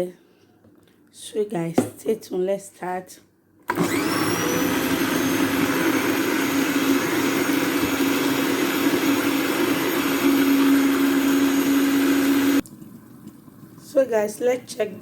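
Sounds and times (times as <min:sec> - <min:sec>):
blender motor whine: 0:03.7 - 0:12.6.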